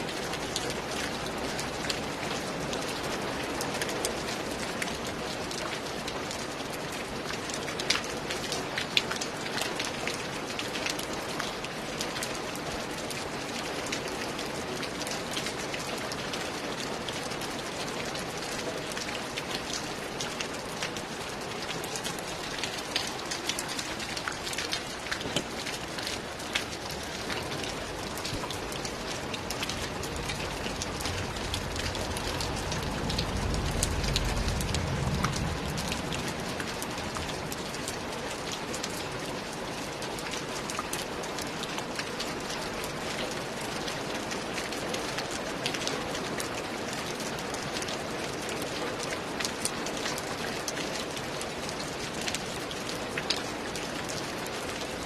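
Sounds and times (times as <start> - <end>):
steady rain falling: 0.0 - 55.0
low rumble: 30.6 - 37.0.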